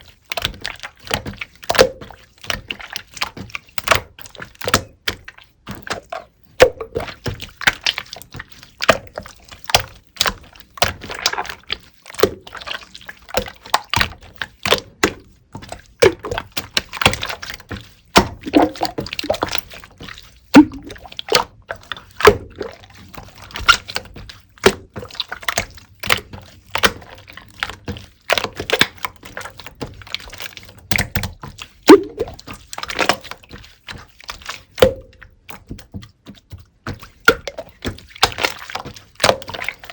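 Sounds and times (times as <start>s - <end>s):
slime popping and squelching: 6.6s - 9.1s, 9.8s - 27.0s, 31.0s - 33.6s.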